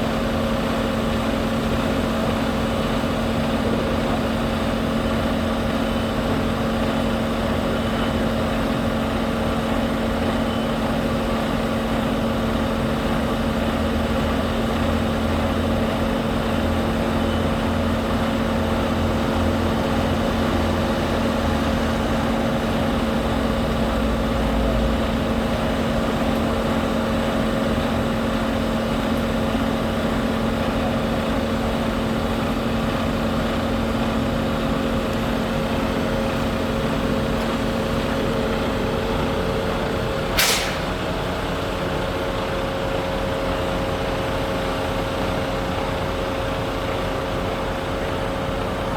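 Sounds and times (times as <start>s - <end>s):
large engine rumbling: 0.0s - 48.9s.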